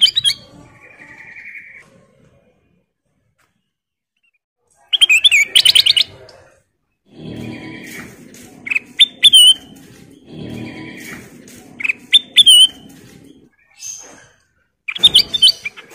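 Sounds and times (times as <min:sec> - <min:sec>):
bird chirping: 0:00.0 - 0:01.8, 0:03.5 - 0:15.9
low rumbling noise: 0:07.1 - 0:13.5
bird calling: 0:07.1 - 0:15.9.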